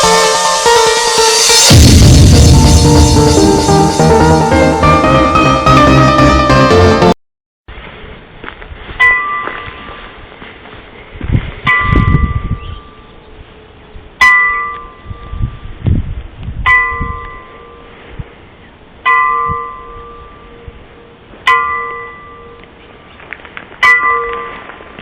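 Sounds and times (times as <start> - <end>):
low rumbles: 0.0 - 6.7
church bell tolling: 16.7 - 18.0, 19.1 - 22.7, 23.8 - 24.7.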